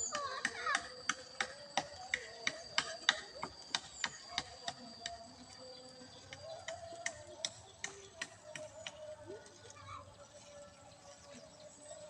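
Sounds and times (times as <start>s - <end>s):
toy motor clicking: 0.0s - 9.1s
faint motor whine: 0.0s - 12.0s.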